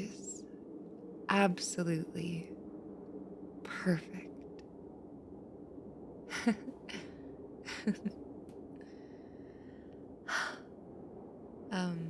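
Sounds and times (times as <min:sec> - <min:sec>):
low background hum: 0:00.0 - 0:12.0
woman's breathy hums: 0:06.3 - 0:08.1, 0:10.3 - 0:10.7.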